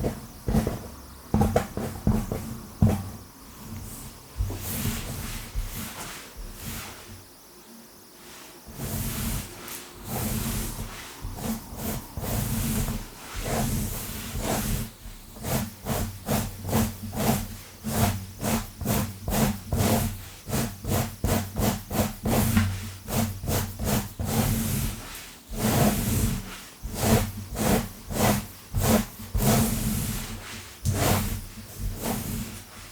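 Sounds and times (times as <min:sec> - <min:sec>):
fingernails scratching through hair: 0:08.8 - 0:25.0, 0:25.6 - 0:32.7.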